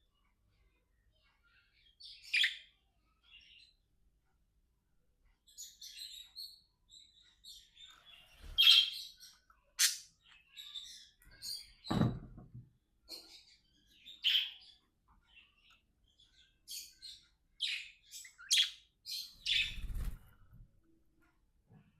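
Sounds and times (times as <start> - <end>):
sharp bird calls: 16.7 - 20.2.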